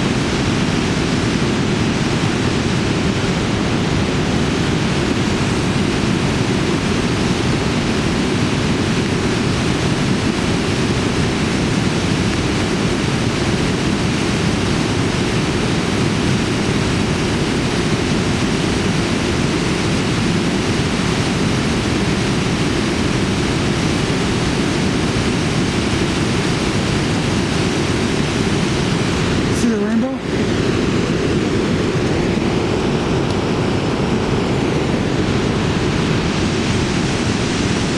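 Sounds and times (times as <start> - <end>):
waterfall rushing: 18.9 - 37.9.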